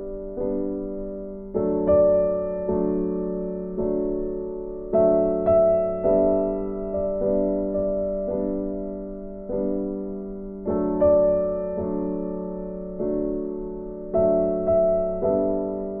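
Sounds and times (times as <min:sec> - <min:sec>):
gentle piano tune: 0:00.0 - 0:16.0.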